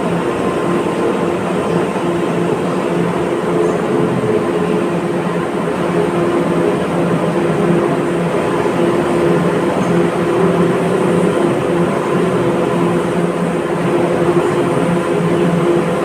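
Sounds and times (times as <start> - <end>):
buzzing hum: 0.0 - 16.0.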